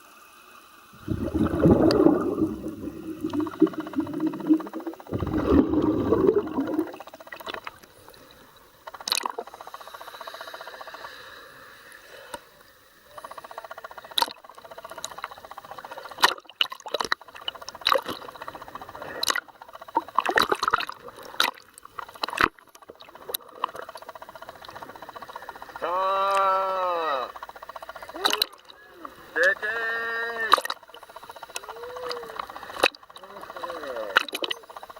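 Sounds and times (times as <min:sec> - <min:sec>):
fluctuating hiss: 0:00.0 - 0:08.9, 0:09.5 - 0:14.1
bubbles gurgling underwater: 0:01.0 - 0:07.7.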